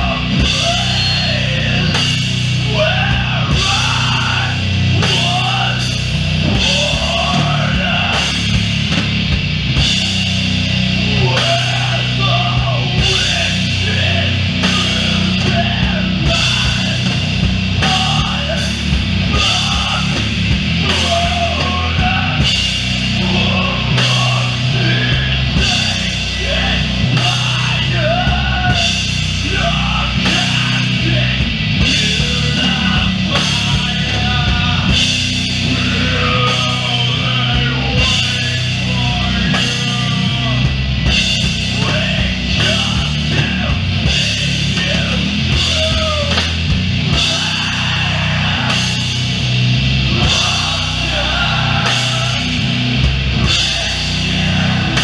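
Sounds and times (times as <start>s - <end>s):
doom metal band playing: 0.0s - 55.0s
heavy distorted guitars: 0.0s - 55.0s.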